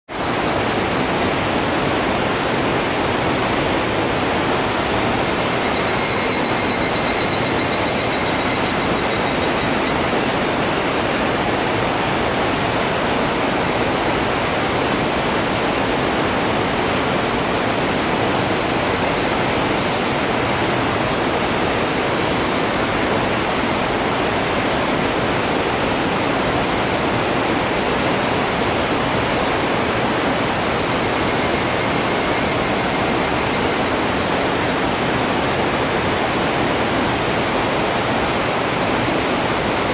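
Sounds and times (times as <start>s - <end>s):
waterfall roaring: 0.1s - 39.9s
high pulsing call: 4.4s - 10.8s, 16.9s - 21.3s, 30.2s - 35.1s.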